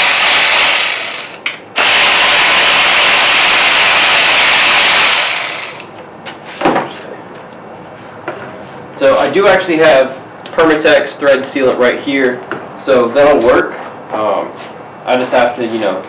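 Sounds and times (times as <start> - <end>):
power tool running: 0.0 - 5.9.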